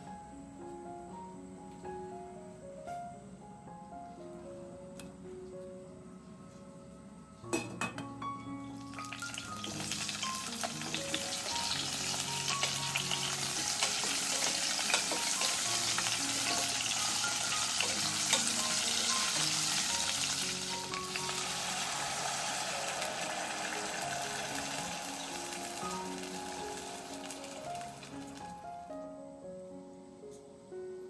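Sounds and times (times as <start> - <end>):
background music with simple melody: 0.0 - 31.0
food sizzling in hot oil: 8.7 - 28.8.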